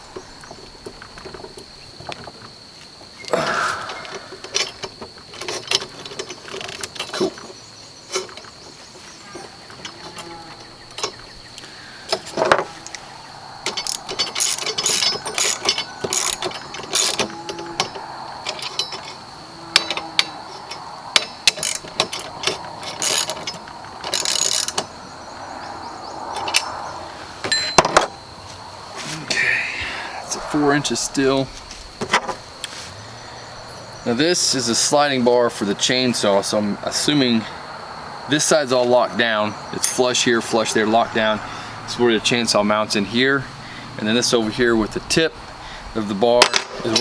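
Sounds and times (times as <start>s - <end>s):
tools and metal parts clinking: 3.8s - 13.0s, 13.6s - 25.0s, 26.3s - 26.8s, 27.4s - 28.2s, 46.4s - 47.0s
rapid ratchet clicking: 23.0s - 24.8s.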